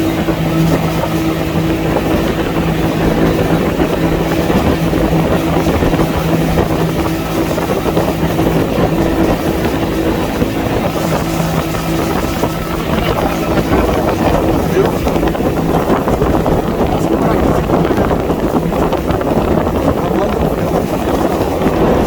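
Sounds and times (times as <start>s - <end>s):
motorboat engine droning: 0.0s - 22.0s
rushing water: 0.0s - 22.0s.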